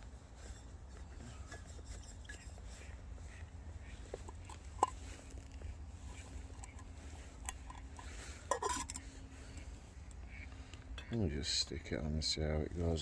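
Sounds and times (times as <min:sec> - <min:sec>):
low steady rumble: 0:00.0 - 0:13.0
metal cookware clinking: 0:08.5 - 0:09.0.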